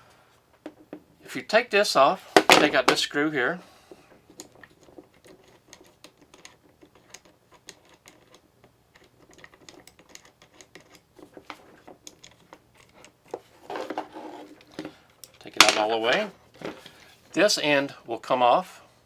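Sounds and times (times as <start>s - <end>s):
screw clicking as turned: 4.4s - 13.2s.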